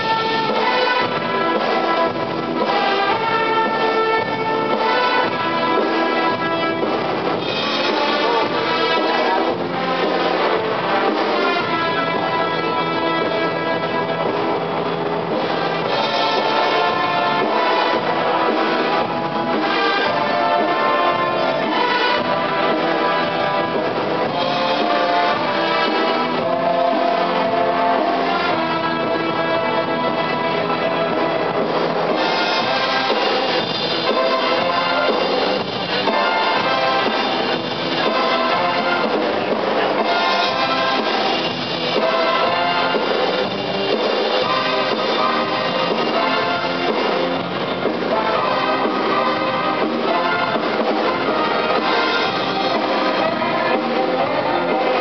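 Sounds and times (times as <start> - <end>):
brass music: 0.0 - 55.0.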